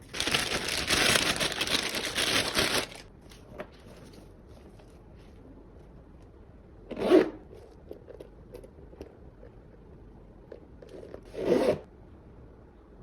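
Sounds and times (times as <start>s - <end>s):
rubbing and handling noise: 0.0s - 6.1s
bag zipper zipping: 6.9s - 7.4s, 11.0s - 11.8s.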